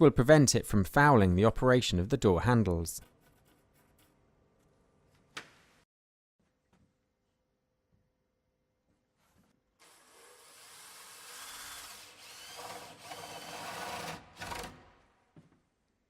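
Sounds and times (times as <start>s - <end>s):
power drill boring into wood: 9.8s - 14.8s.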